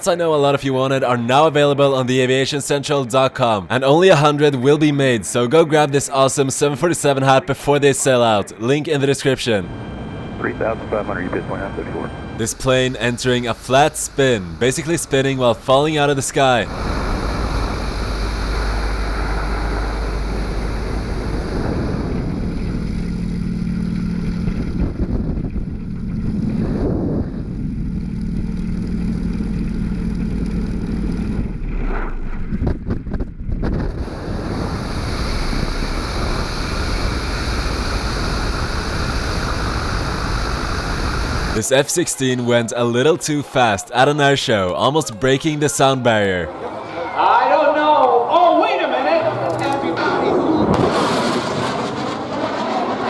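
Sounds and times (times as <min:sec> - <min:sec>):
low steady hum: 0:03.3 - 0:31.8
aircraft engine: 0:09.6 - 0:12.4, 0:16.7 - 0:41.6, 0:49.5 - 0:53.0
rush of wind noise: 0:16.7 - 0:23.2, 0:24.4 - 0:27.9, 0:32.4 - 0:41.6.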